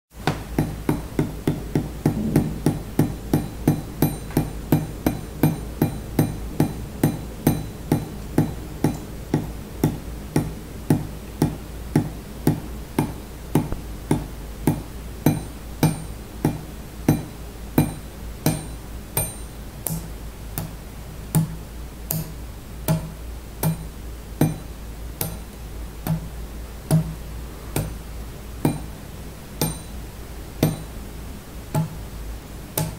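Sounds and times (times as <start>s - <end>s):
low hum: 2.0s - 4.6s.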